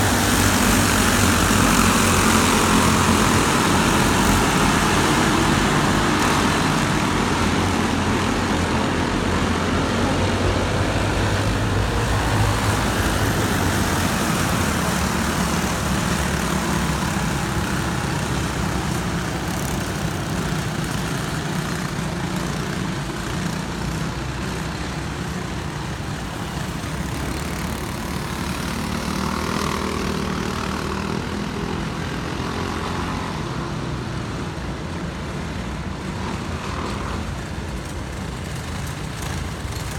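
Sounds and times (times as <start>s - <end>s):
go-kart engines racing: 0.0s - 39.9s.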